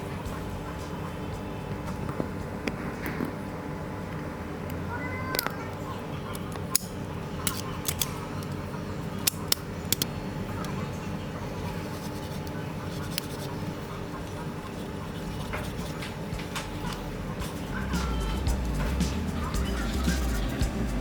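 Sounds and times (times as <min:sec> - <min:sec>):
workbench equipment humming: 0:05.8 - 0:21.0
small tools clicking: 0:06.3 - 0:08.6.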